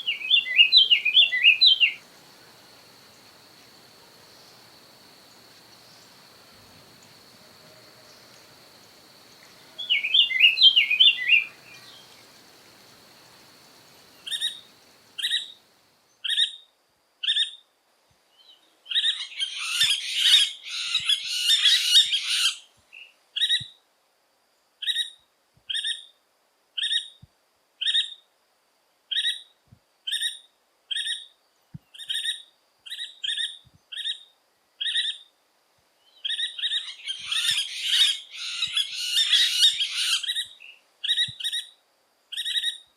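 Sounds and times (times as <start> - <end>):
bird twittering: 0.0 - 2.0, 9.8 - 12.1
woodpecker calling: 0.0 - 2.0, 9.8 - 12.2, 14.2 - 15.6, 36.2 - 41.7, 42.3 - 42.9.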